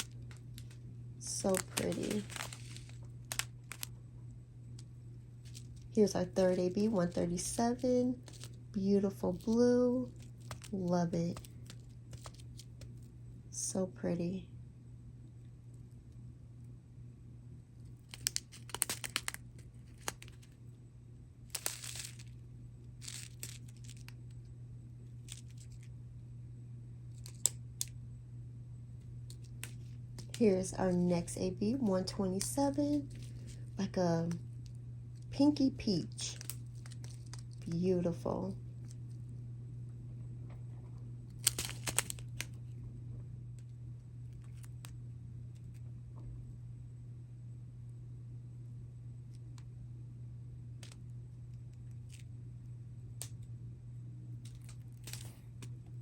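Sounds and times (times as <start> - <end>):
plastic bags crinkling and rattling: 0.0 - 3.9, 5.4 - 8.6, 9.3 - 13.0, 18.0 - 20.5, 21.5 - 22.4, 23.0 - 24.2, 29.3 - 31.4, 32.0 - 33.7, 36.1 - 37.7, 41.4 - 42.6
steady low hum: 0.0 - 56.0.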